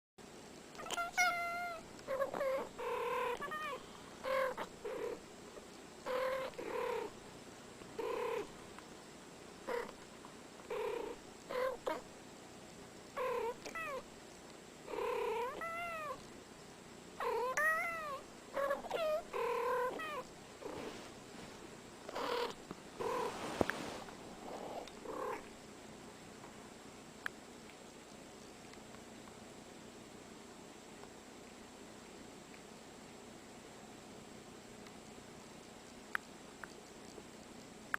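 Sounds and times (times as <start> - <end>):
cats meowing: 0.8 - 4.8, 13.2 - 14.0, 15.3 - 16.2, 17.2 - 20.3.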